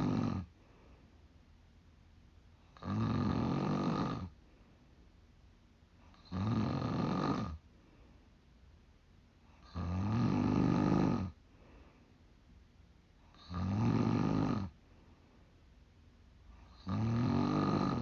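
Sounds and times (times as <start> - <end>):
woman snoring: 0.0 - 0.5, 2.8 - 4.3, 6.1 - 7.6, 9.6 - 11.4, 13.3 - 14.8, 16.6 - 18.0.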